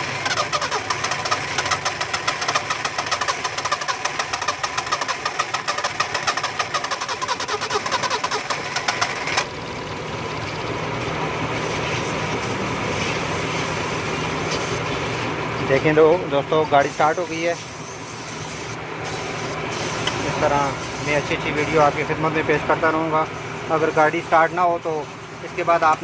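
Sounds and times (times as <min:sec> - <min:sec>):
car engine cranking: 0:00.0 - 0:10.6
car engine idling: 0:00.0 - 0:26.0.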